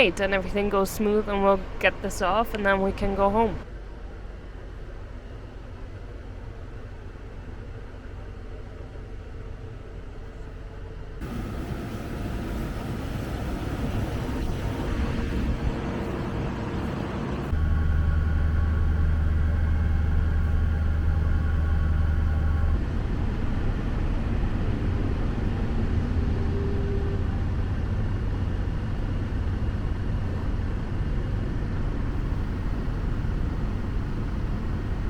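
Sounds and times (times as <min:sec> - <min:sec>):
heavy machinery engine running: 0:11.2 - 0:26.6, 0:32.0 - 0:35.0
steady higher whine: 0:11.2 - 0:35.0.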